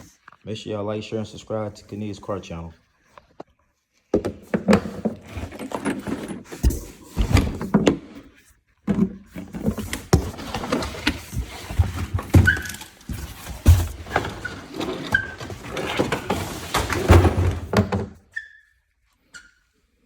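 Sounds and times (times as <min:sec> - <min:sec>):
knocks thumps and rattles: 0:15.4 - 0:18.2.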